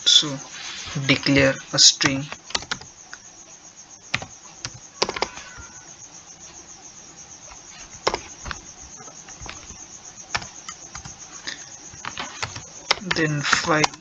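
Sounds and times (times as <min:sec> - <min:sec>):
background hiss: 0:00.0 - 0:14.0
keyboard keys tapping: 0:01.1 - 0:03.2, 0:04.1 - 0:05.8, 0:07.5 - 0:14.0.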